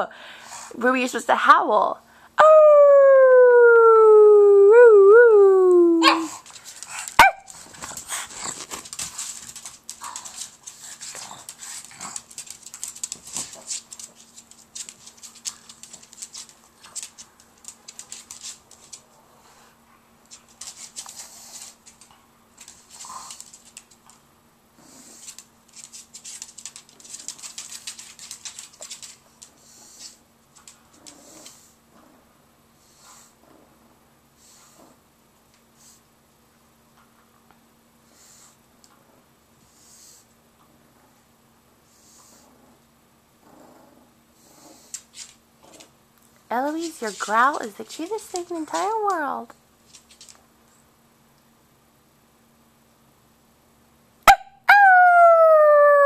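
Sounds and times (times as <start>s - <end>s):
dog howling: 2.4s - 6.4s, 54.7s - 56.0s
dogs scuffling and rustling: 6.3s - 31.9s, 44.6s - 50.8s.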